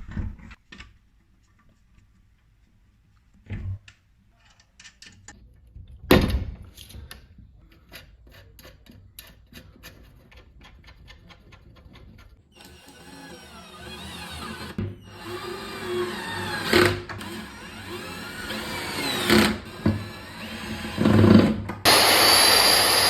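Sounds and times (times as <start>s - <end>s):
power drill running: 12.6s - 23.0s.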